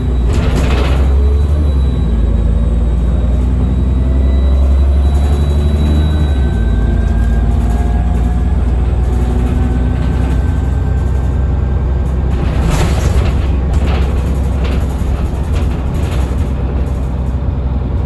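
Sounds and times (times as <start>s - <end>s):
turbo whine: 0.0s - 13.1s
diesel bus engine drone: 0.0s - 18.0s.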